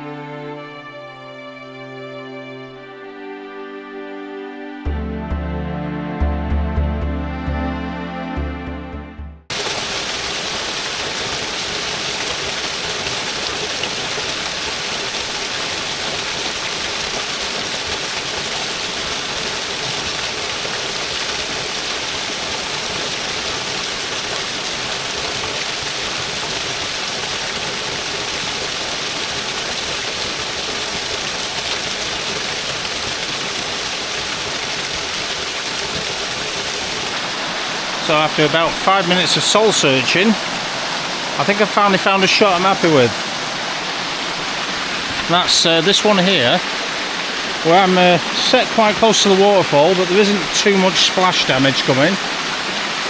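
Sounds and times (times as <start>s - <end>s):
music: 0.0s - 9.5s
waterfall rushing: 9.5s - 53.0s.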